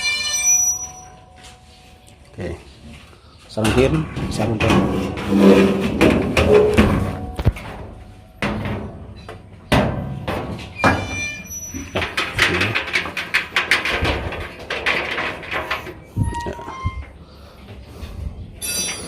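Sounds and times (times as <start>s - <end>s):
dryer parts knocking and clattering: 3.6s - 17.2s.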